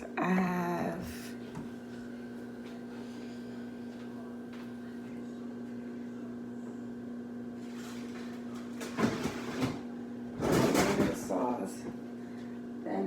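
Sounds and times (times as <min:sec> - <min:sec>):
electrical hum: 0:00.0 - 0:13.0
objects clattering and rustling: 0:07.6 - 0:11.5.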